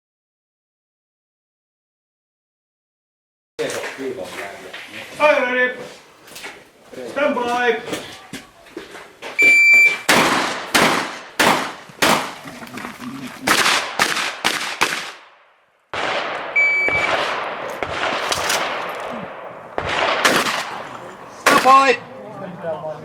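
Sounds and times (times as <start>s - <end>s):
shot timer beep: 9.4s - 10.1s, 16.6s - 17.2s
shotgun shots: 9.8s - 12.4s, 13.4s - 22.0s.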